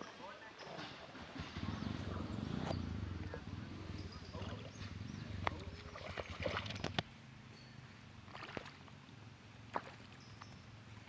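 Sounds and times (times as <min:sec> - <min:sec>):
water splashing and sloshing: 0:00.2 - 0:07.2, 0:08.2 - 0:11.0.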